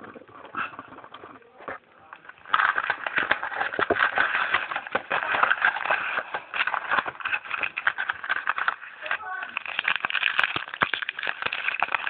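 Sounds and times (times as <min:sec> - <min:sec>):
plastic wrapping crinkling and tearing: 0:00.0 - 0:12.0.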